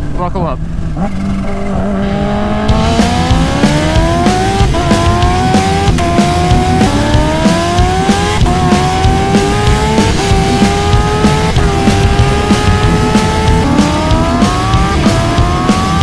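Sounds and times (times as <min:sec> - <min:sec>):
motorcycle engine accelerating: 0:00.0 - 0:16.0
music track: 0:02.0 - 0:16.0.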